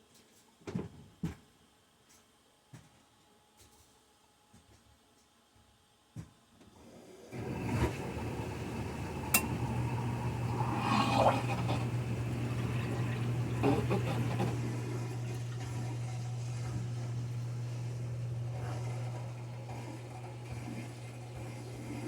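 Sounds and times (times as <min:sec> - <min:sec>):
tap water rushing and spitting: 0:07.3 - 0:22.0
steady low hum: 0:07.4 - 0:22.0.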